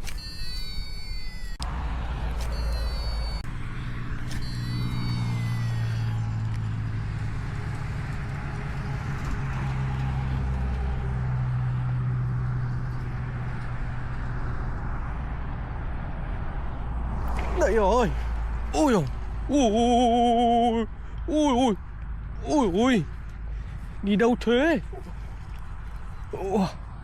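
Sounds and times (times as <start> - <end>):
motor humming: 0.0 - 8.6.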